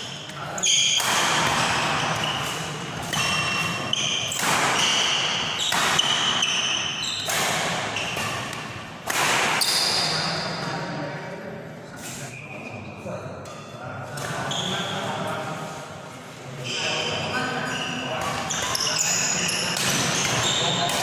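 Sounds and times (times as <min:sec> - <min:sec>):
sneakers squeaking on court: 0:00.1 - 0:08.7, 0:16.6 - 0:21.0
racket striking shuttlecock: 0:00.9 - 0:09.8.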